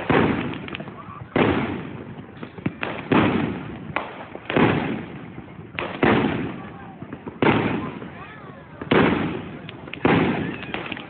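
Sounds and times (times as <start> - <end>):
fireworks bangs with echo: 0.0 - 11.0.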